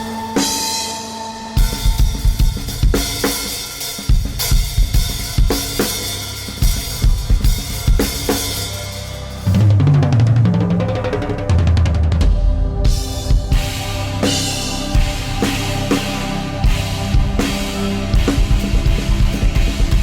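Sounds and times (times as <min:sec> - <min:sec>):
drum kit playing: 0:00.0 - 0:20.0
deep held bass tone: 0:06.2 - 0:20.0.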